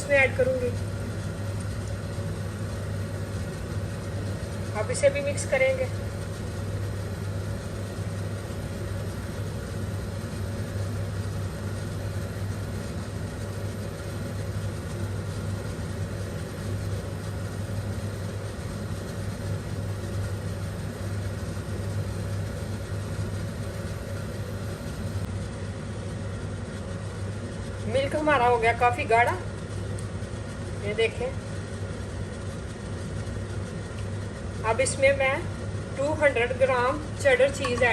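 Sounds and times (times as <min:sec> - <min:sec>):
low hum with rumble: 0:00.0 - 0:37.9.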